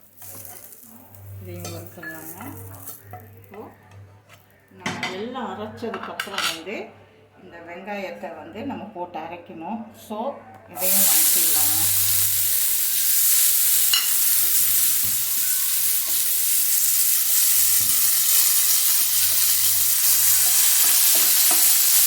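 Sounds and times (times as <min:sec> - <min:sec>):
onions sizzling in oil: 0:00.0 - 0:03.8, 0:10.8 - 0:22.0.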